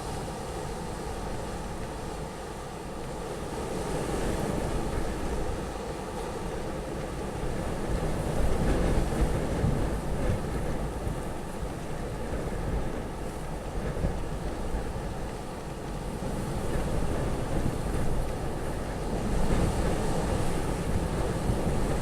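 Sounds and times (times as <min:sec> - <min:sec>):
wind buffeting microphone: 0:06.4 - 0:22.0.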